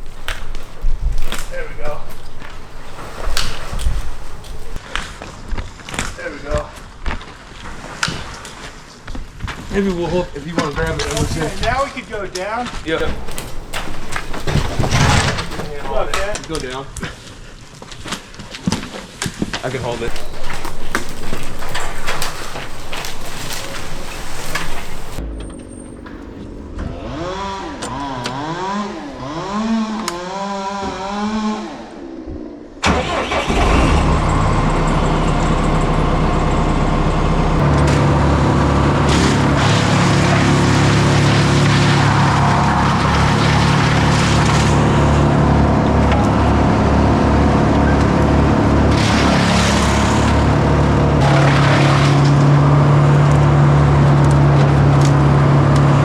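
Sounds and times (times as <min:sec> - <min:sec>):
engine starting and running: 0:00.0 - 0:04.8, 0:13.0 - 0:16.4, 0:20.1 - 0:25.2, 0:32.8 - 0:56.0.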